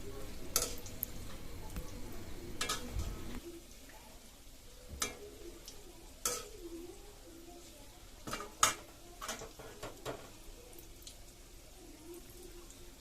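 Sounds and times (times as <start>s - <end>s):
oil sizzling: 0.0s - 13.0s
utensil clinking against wok: 0.5s - 0.9s, 2.6s - 2.9s, 6.2s - 6.6s.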